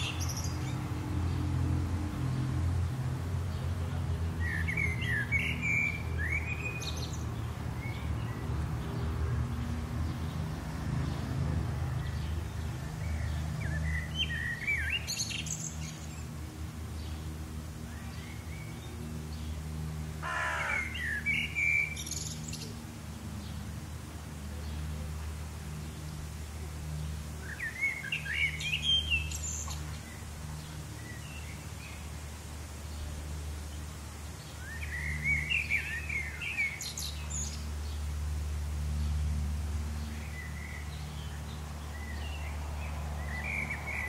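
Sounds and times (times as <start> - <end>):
small birds chirping: 0.0 - 2.5, 3.4 - 44.0
distant road traffic rumble: 0.0 - 44.0
songbird singing: 0.0 - 44.0
crow cawing: 20.2 - 21.2.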